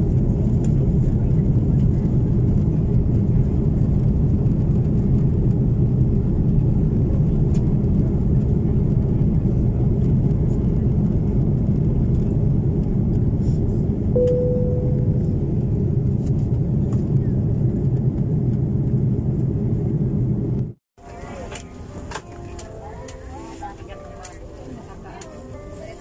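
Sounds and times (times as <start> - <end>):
airliner cabin rumble: 0.0 - 26.0
ringing chime tone: 14.2 - 15.4.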